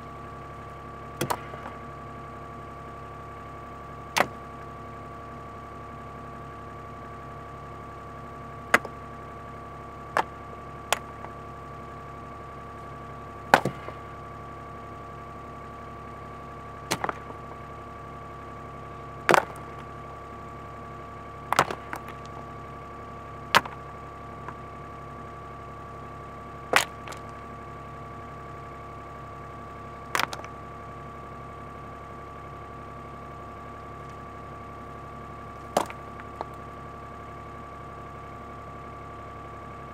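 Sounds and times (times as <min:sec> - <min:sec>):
excavator engine running: 0:00.0 - 0:39.9
sharp knocks: 0:13.6 - 0:14.0.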